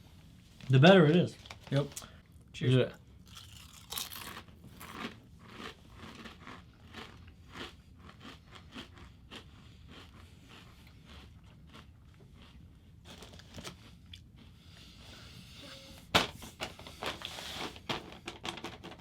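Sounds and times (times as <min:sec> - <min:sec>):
chewing potato chips: 0:03.2 - 0:14.6.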